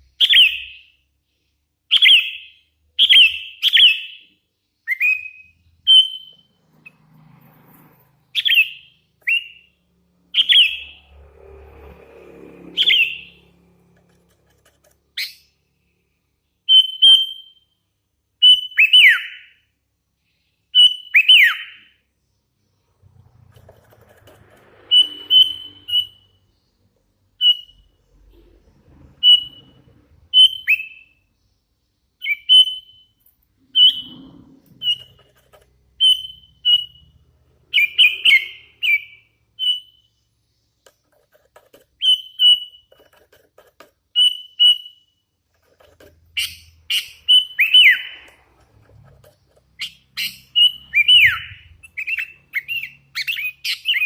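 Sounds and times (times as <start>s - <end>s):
bird whistled calls: 4.8s - 6.5s, 16.7s - 17.6s, 24.9s - 26.3s, 33.7s - 34.2s, 46.4s - 48.3s, 49.8s - 54.0s.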